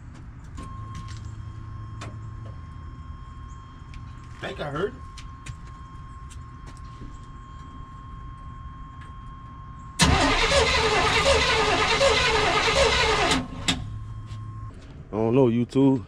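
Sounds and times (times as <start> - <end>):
faint steady tone: 0.6 - 10.0
engine cranking on starter: 10.0 - 13.9.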